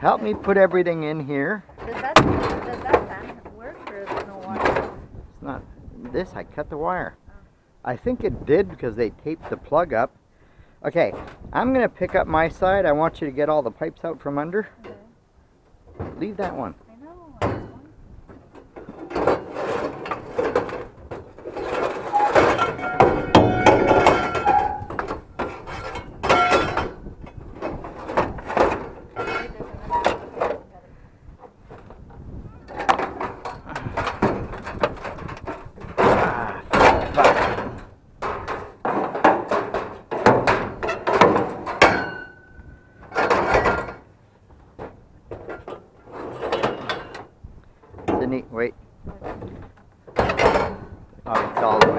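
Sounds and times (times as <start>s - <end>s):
scrap metal clanking: 17.4s - 30.7s, 32.7s - 44.1s, 44.8s - 48.4s, 49.2s - 51.9s
short metallic rings: 22.0s - 25.0s, 25.7s - 27.0s, 41.7s - 42.6s.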